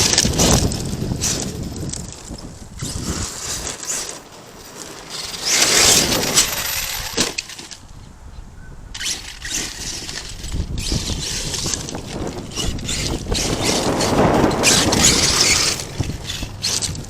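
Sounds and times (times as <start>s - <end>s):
tyres hissing on gravel: 13.3s - 17.0s.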